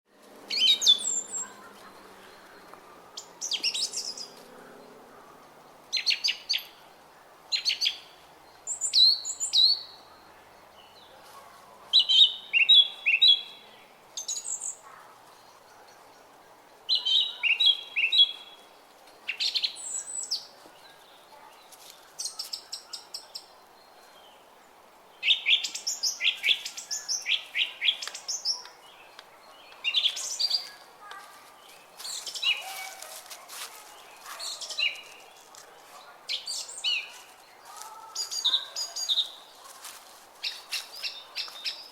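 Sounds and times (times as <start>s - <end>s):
songbirds chirping: 0.1s - 41.9s.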